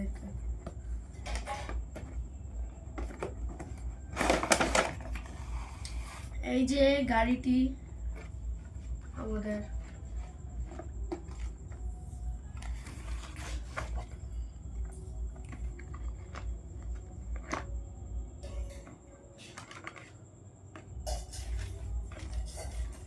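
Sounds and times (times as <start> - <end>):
low steady hum: 0.0 - 23.0
packaging rustling: 4.1 - 5.8.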